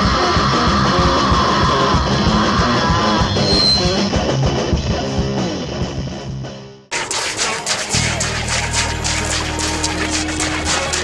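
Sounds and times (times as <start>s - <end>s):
loud rock music: 0.0s - 6.7s.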